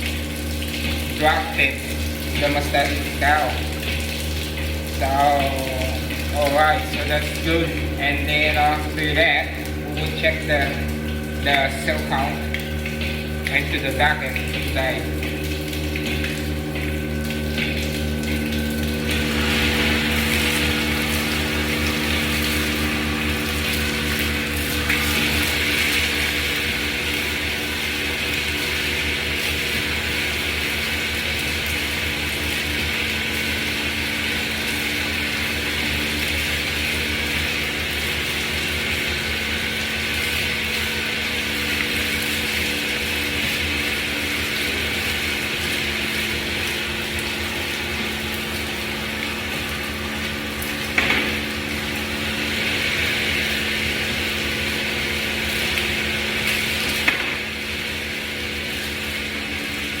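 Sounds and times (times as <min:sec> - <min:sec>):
milking machinery hum and hiss: 0:00.0 - 1:00.0.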